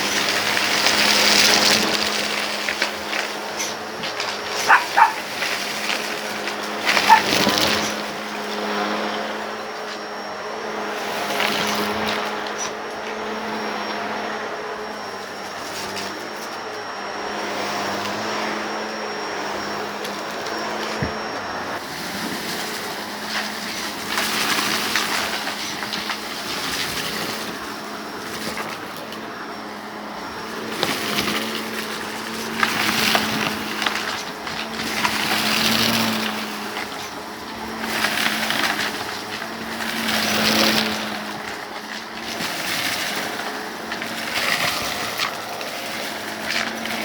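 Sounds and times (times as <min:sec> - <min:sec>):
grit rattling through vacuum: 0:00.0 - 0:47.0
vacuum cleaner motor hum: 0:00.0 - 0:47.0.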